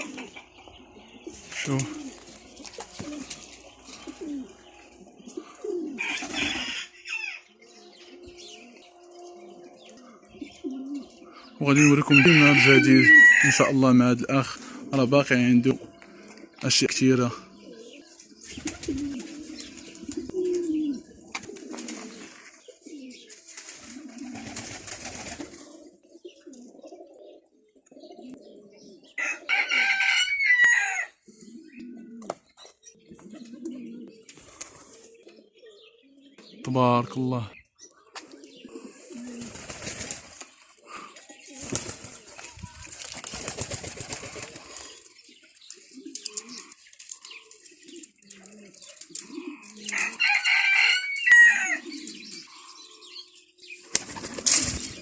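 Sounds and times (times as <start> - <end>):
small birds chirping: 0.0 - 12.6, 13.4 - 29.3, 31.2 - 55.0
pigeons cooing: 0.0 - 55.0
rooster crowing: 5.9 - 7.6, 11.8 - 13.8, 29.2 - 31.2, 49.9 - 51.9.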